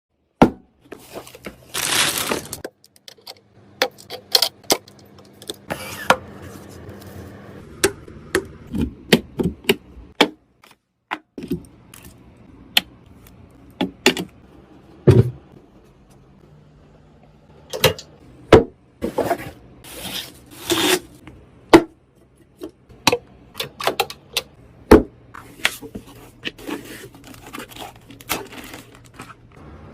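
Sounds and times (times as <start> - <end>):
packaging rustle: 1.0 - 2.6, 26.6 - 29.5.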